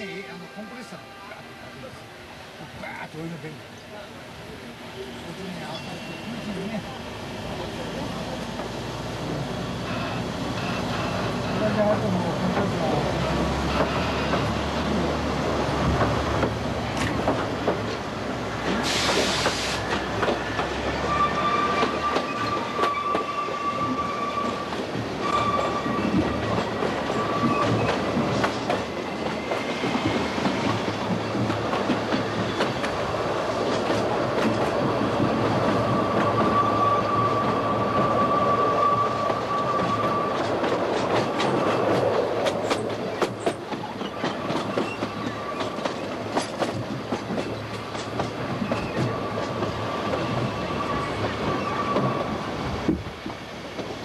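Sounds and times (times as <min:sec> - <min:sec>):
train wheels clicking over rail joints: 0:13.4 - 0:14.7, 0:15.7 - 0:20.9, 0:24.5 - 0:36.6, 0:39.3 - 0:54.0
high-pitched wheel squeal: 0:21.0 - 0:24.6, 0:25.2 - 0:26.2, 0:35.9 - 0:40.5.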